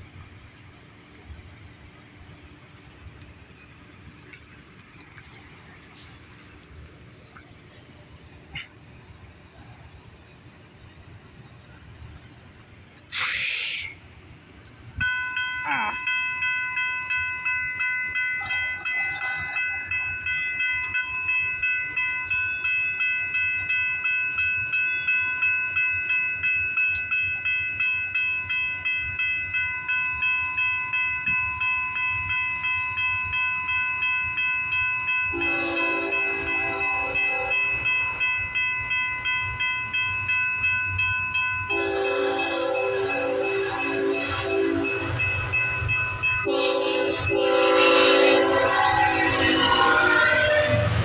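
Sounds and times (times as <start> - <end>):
high-pitched ringing: 15.0 - 51.0
locomotive horn blasts: 35.3 - 37.7, 41.7 - 45.4, 46.4 - 51.0.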